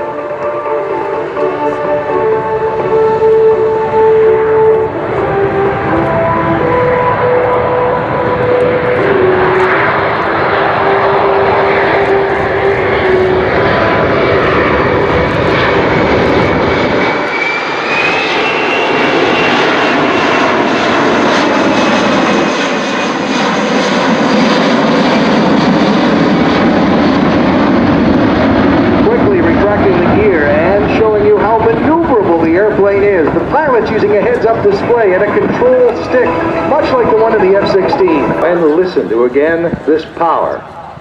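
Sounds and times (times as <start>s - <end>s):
high whine: 0.0s - 41.0s
jet engines roaring: 0.0s - 41.0s
tone falling in pitch: 34.8s - 40.2s.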